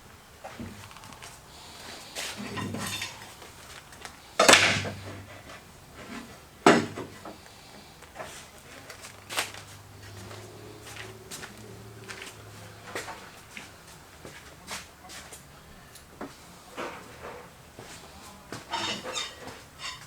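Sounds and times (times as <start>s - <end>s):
metal hardware clanking: 2.3s - 5.2s.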